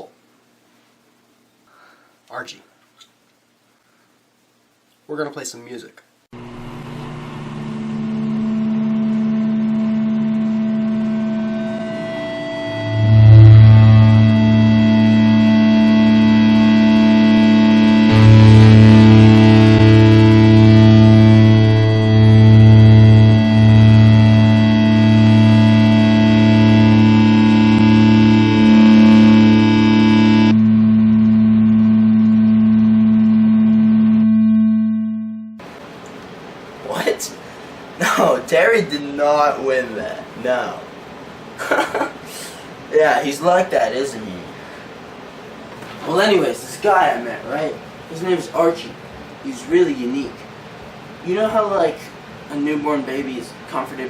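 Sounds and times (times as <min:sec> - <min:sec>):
static hiss: 0:00.0 - 0:34.9, 0:35.6 - 0:54.0
electronic drone: 0:06.4 - 0:35.6.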